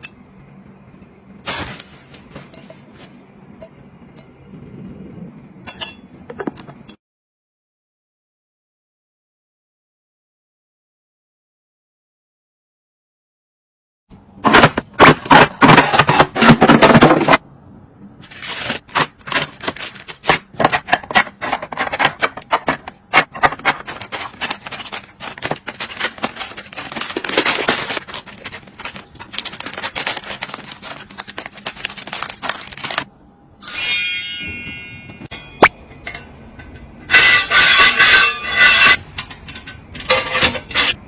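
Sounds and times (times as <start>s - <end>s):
packaging taps and crinkling: 23.3s - 33.0s
short high ringing tone: 33.6s - 35.6s.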